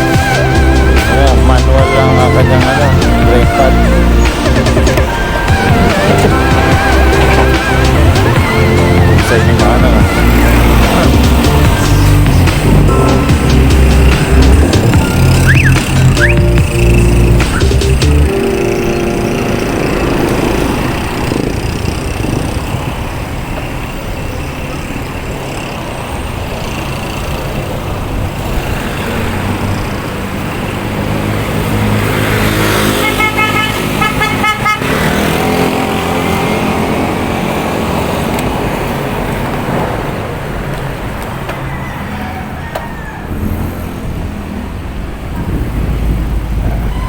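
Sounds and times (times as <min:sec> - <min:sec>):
road traffic: 0:00.0 - 0:47.0
pulsing car horn: 0:12.0 - 0:22.4, 0:32.5 - 0:37.1, 0:46.8 - 0:47.0.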